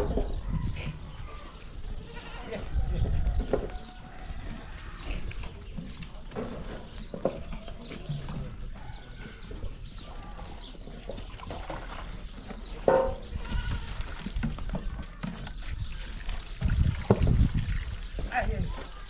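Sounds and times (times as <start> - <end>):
goat or sheep bleating: 2.0 - 2.7, 13.3 - 14.2.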